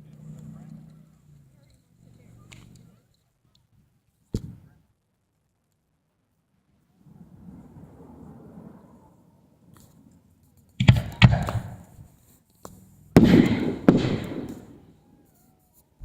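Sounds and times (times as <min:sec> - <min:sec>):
fireworks bangs with rumble: 0:10.8 - 0:11.8, 0:13.2 - 0:14.8.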